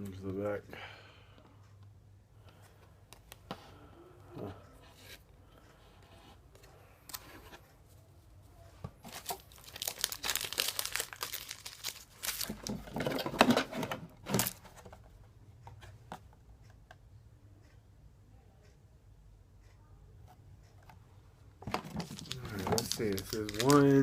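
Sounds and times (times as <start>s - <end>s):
wrapper tearing and crinkling: 9.1s - 12.9s, 22.0s - 24.0s.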